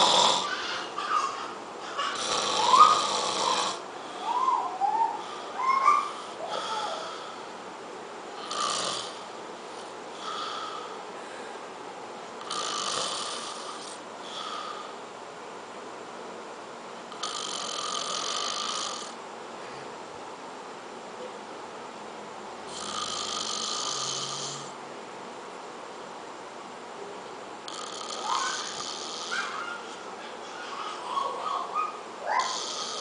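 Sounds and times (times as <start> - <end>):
man snoring: 0.0 - 0.6, 2.2 - 3.8, 8.4 - 9.3, 10.2 - 10.8, 12.4 - 14.9, 17.1 - 19.2, 22.7 - 24.8, 27.7 - 29.4, 32.4 - 33.0.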